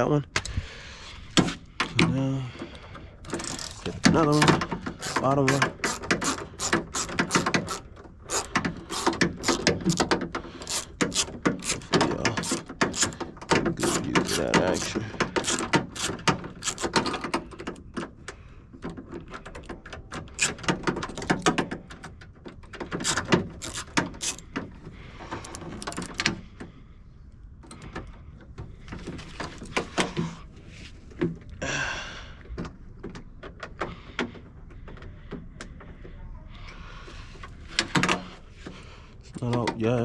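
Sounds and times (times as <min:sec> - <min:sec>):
metal tools clicking and knocking: 0:01.8 - 0:18.2, 0:18.8 - 0:24.7
metal scraping rasp: 0:03.3 - 0:17.0, 0:23.0 - 0:24.5.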